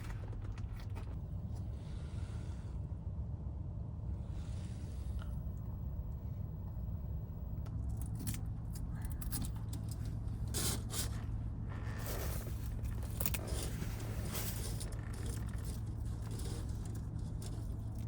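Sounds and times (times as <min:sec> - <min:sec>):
steady low hum: 0:00.0 - 0:18.0
small objects clinking and scraping: 0:11.9 - 0:18.0.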